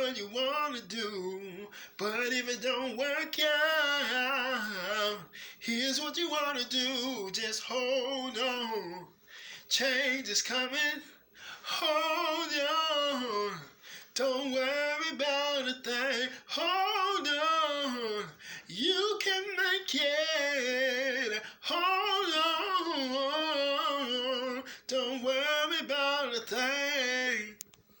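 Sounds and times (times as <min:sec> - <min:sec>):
person singing unaccompanied: 0:00.0 - 0:09.1, 0:09.7 - 0:27.6
singer breathing: 0:01.7 - 0:02.0, 0:05.2 - 0:05.7, 0:09.1 - 0:09.7, 0:11.1 - 0:11.8, 0:13.6 - 0:14.2, 0:18.3 - 0:18.7, 0:21.4 - 0:21.6, 0:24.6 - 0:24.9.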